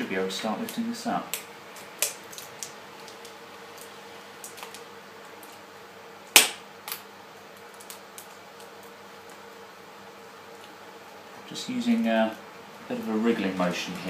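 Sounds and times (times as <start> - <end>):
sharp snap: 6.3 - 7.0.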